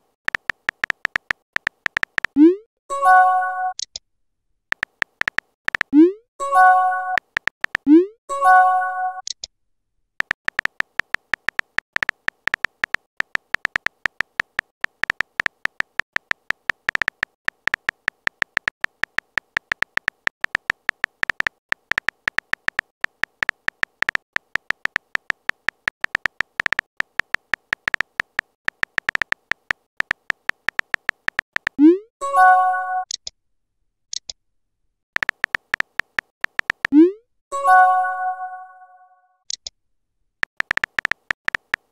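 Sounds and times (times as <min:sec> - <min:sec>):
phone keyboard typing clicks: 0:00.3 - 0:02.5, 0:04.7 - 0:06.1, 0:07.1 - 0:08.0, 0:10.2 - 0:31.8, 0:35.2 - 0:37.0, 0:40.4 - 0:41.9
message notification chime: 0:37.6 - 0:39.0.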